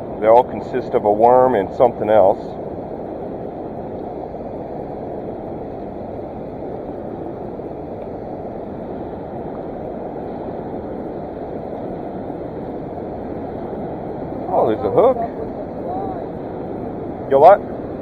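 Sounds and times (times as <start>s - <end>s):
river rushing: 14.3s - 16.5s.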